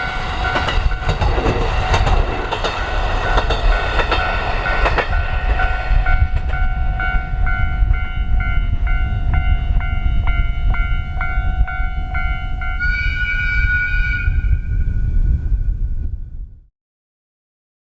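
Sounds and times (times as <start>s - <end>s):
train wheel clicks: 0.0s - 8.1s.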